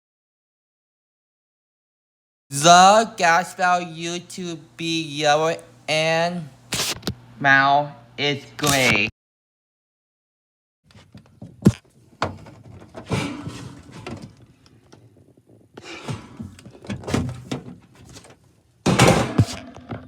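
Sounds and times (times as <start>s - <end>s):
handling thunks and clatter: 11.0s - 20.0s.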